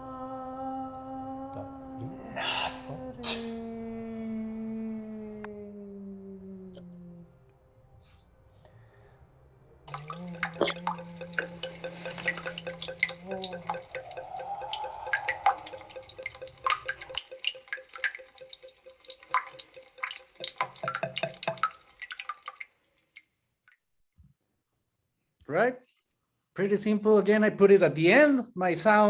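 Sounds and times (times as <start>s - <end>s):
faint hum: 9.9s - 19.6s
water dripping from tap: 9.9s - 23.8s.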